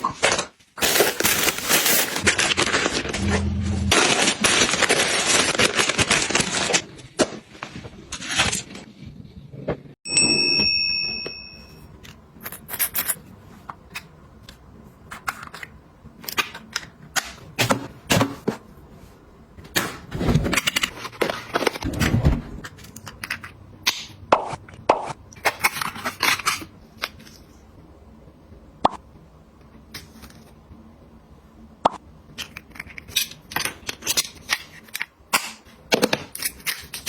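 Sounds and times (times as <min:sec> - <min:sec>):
short high ringing tone: 0:10.1 - 0:11.9.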